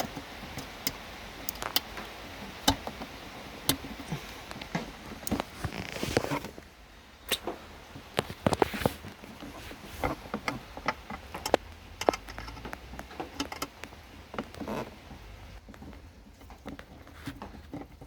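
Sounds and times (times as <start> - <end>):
hands clicking plastic parts: 0.0 - 5.5, 10.0 - 14.9.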